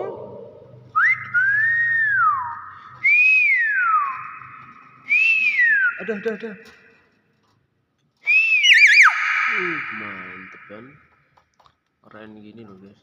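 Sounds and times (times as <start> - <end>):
bird whistling: 1.0 - 6.6, 8.3 - 10.8.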